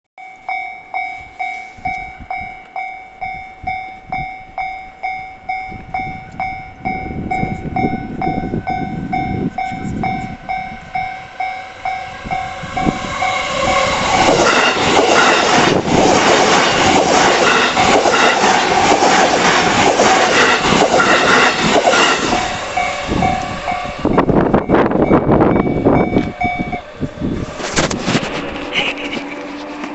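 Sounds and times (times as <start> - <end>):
level crossing bell ringing: 0.2 - 13.4
train passing: 0.8 - 29.9.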